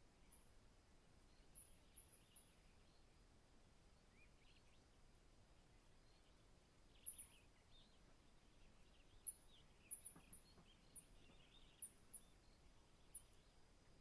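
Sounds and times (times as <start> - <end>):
soft low bird calls: 4.0 - 14.0.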